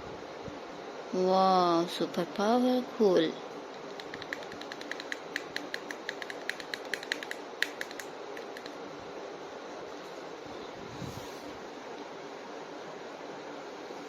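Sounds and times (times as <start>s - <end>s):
plastic toys clicking: 3.8s - 8.8s.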